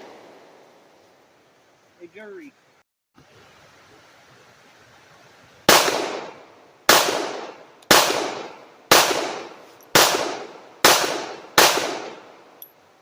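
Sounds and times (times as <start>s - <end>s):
gunshots: 5.7s - 6.3s, 6.9s - 12.2s.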